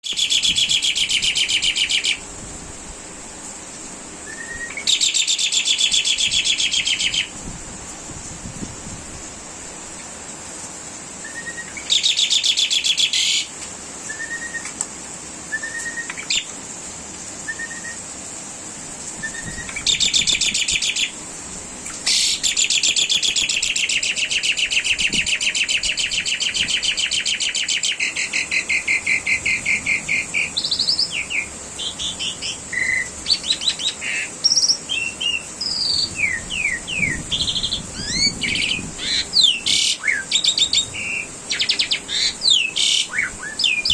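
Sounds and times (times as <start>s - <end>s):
starling singing trills and whistles: 0.0s - 2.3s, 4.2s - 7.4s, 11.2s - 14.8s, 15.5s - 16.6s, 17.4s - 18.1s, 19.2s - 21.2s, 21.9s - 43.9s.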